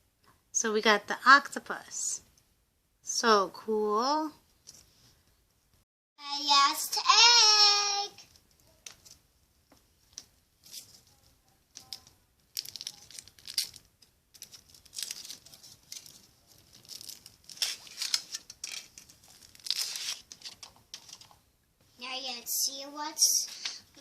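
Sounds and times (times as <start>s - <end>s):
foil wrapper crinkling: 10.6s - 21.3s.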